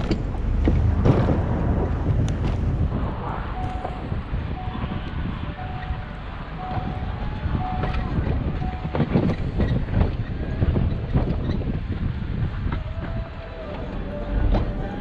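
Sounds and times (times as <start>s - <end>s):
heavy knocks and clanks: 0.0s - 3.0s
snow plow engine rumbling: 0.0s - 15.0s
reversing alarm beeping: 3.5s - 9.6s.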